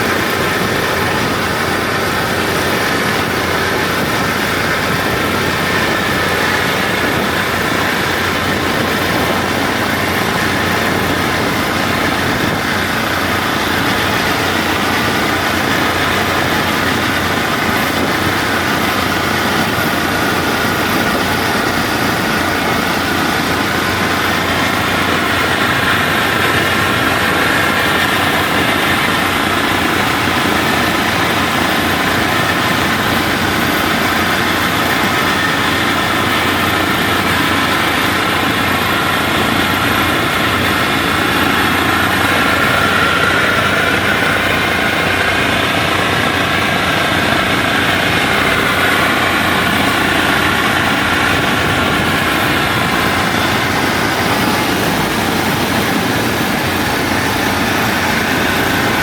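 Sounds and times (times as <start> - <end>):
combine harvester engine running: 0.0 - 59.0
following vehicle engine: 0.0 - 59.0.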